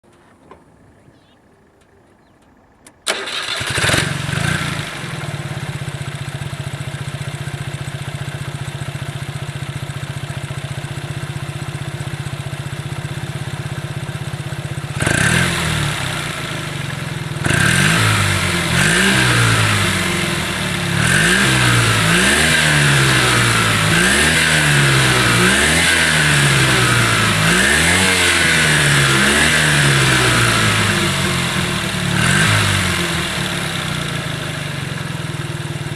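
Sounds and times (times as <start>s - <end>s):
truck engine idling: 0.0s - 3.8s, 5.1s - 15.0s
truck engine starting: 0.0s - 7.2s
engine revving in short blips: 0.1s - 5.2s.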